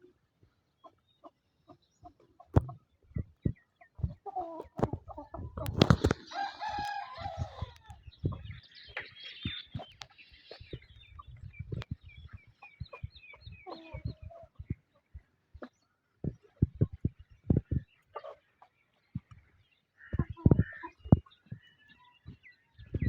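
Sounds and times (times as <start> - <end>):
rooster clucking: 3.4 - 8.5, 12.6 - 14.8, 20.0 - 21.3
rooster crowing: 6.3 - 7.9.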